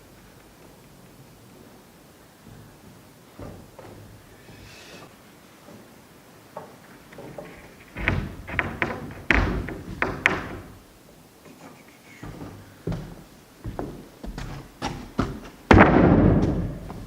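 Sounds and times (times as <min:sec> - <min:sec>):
knocks and thuds on wood: 0:03.4 - 0:04.2, 0:06.6 - 0:10.8, 0:12.2 - 0:17.0.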